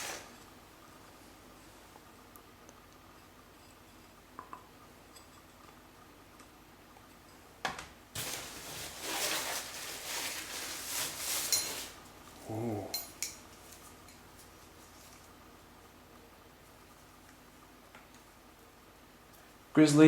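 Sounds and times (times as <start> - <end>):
packaging rustling and crinkling: 8.2 - 12.1.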